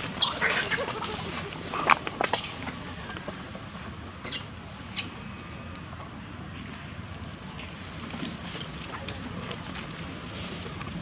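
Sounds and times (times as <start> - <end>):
monkeys squeaking and chirping: 0.2 - 2.9, 4.0 - 5.1.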